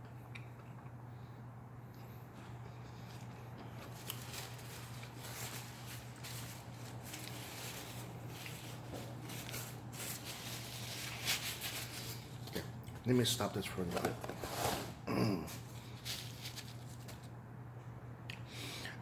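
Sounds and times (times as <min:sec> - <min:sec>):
chewing and crunching food: 0:00.0 - 0:13.1
steady low hum: 0:00.0 - 0:19.0.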